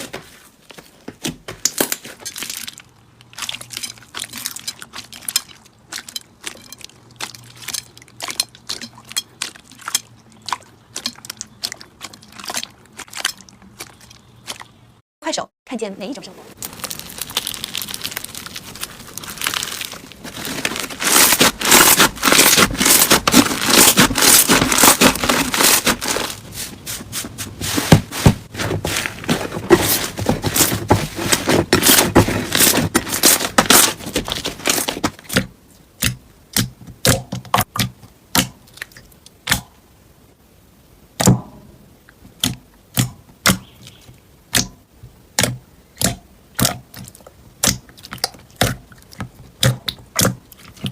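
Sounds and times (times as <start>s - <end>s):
slime crackling: 2.2s - 14.7s, 16.5s - 26.6s.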